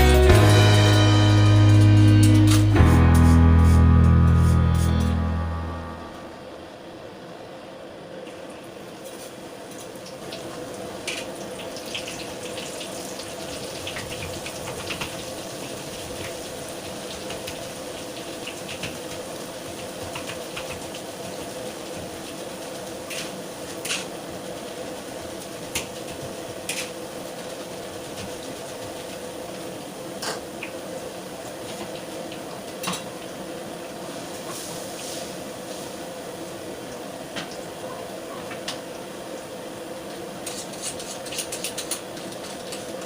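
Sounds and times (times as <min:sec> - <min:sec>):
low hum: 0:00.0 - 0:07.2.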